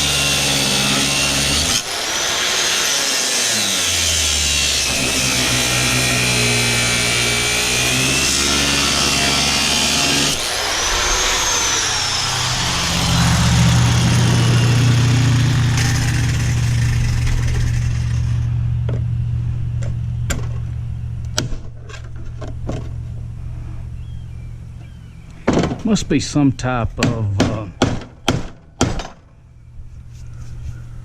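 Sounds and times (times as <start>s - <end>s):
power tool winding down: 0.0s - 18.5s
low machine hum: 10.4s - 27.0s.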